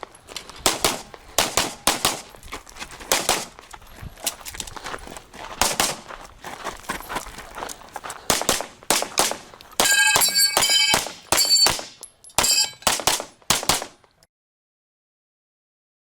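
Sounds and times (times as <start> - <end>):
pistol shots: 0.6 - 2.3, 3.1 - 3.5, 5.6 - 6.0, 8.3 - 14.0
steel targets ringing: 9.8 - 13.0.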